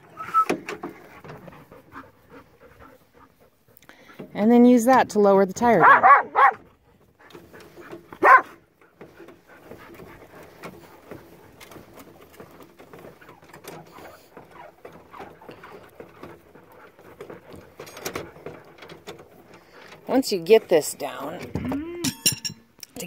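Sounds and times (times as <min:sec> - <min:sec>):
dog barking: 0:05.8 - 0:06.6, 0:08.2 - 0:08.5
faint light clicks and rattles: 0:06.6 - 0:21.5.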